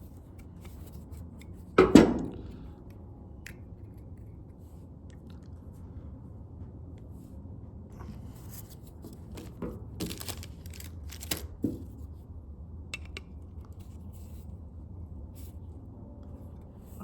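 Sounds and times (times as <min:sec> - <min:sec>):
metal parts clicking and scraping: 0:09.3 - 0:11.6.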